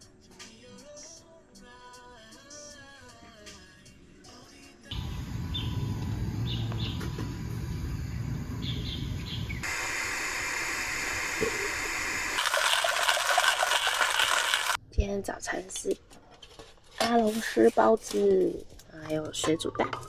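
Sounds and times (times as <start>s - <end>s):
birds chirping: 4.9s - 12.1s
steady low rumble: 4.9s - 12.4s
steady hiss: 7.3s - 14.8s.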